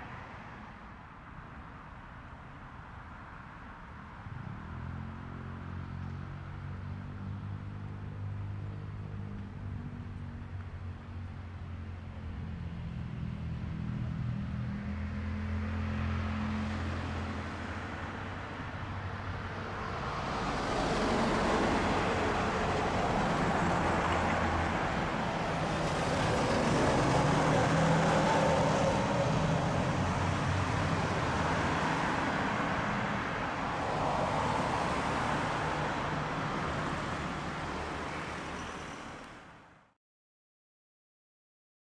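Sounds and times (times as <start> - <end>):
vehicles driving past: 4.2 - 39.8.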